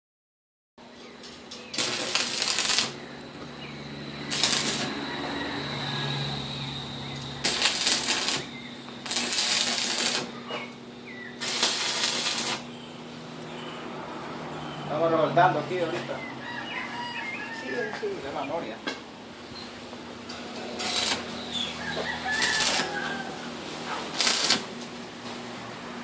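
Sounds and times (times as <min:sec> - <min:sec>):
steady low hum: 0:00.8 - 0:16.4
arc welding crackling: 0:01.2 - 0:13.2, 0:19.4 - 0:25.8.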